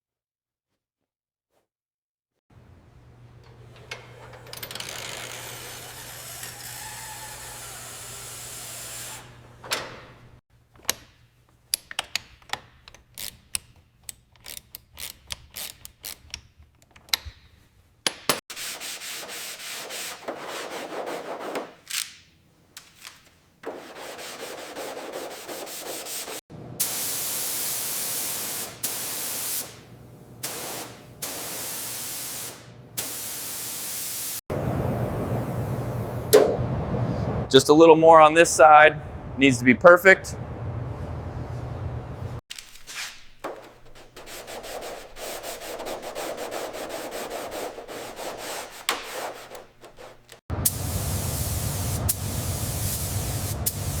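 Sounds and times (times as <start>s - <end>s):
sanding hiss: 23.7s - 34.4s, 43.6s - 54.0s.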